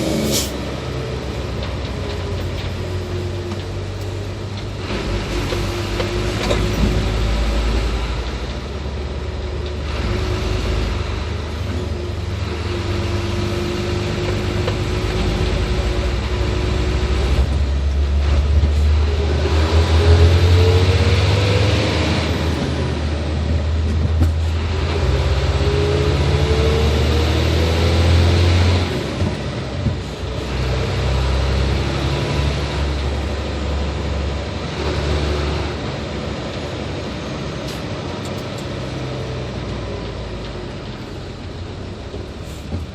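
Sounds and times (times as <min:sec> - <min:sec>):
truck diesel engine running: 0:00.0 - 0:42.9.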